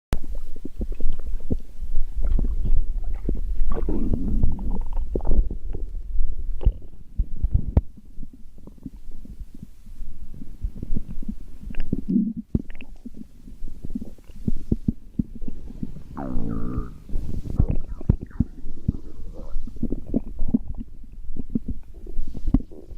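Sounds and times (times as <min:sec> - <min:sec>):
stomach growling: 0:00.2 - 0:22.9
low-pitched groan: 0:16.2 - 0:19.6.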